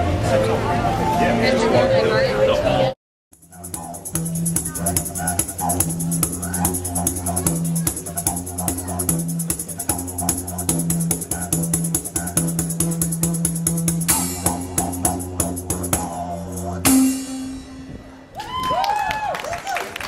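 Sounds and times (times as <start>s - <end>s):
faint melody: 0.0s - 18.3s
fast percussive beat: 3.3s - 17.8s
low drone: 3.4s - 18.3s.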